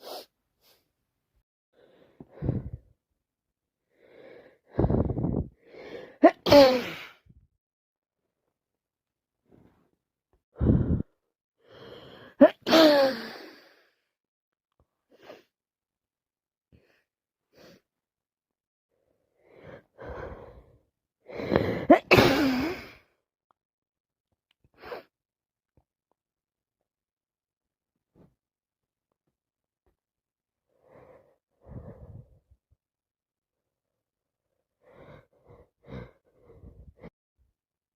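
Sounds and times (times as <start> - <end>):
sniffs: 0.0 - 0.8
woman sneezing: 6.2 - 7.1, 12.4 - 13.4, 21.8 - 22.9.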